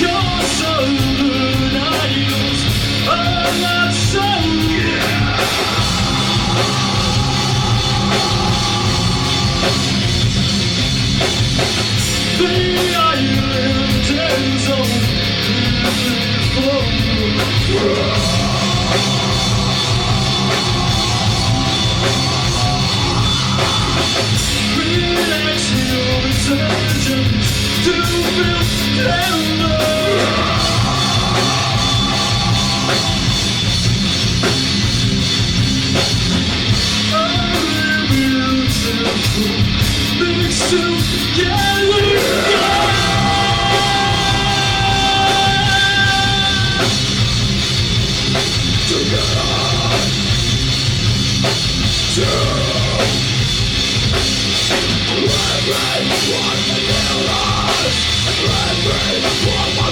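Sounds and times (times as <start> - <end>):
rock band playing: 0.0 - 59.9
person singing: 3.1 - 10.4, 12.5 - 33.9, 37.2 - 47.0, 52.1 - 53.3.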